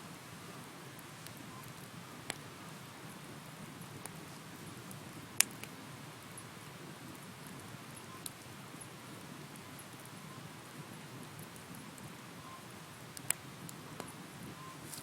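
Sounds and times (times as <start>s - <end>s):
bonfire burning with low rumble: 0.0s - 15.0s
fire crackling pops: 0.1s - 15.0s.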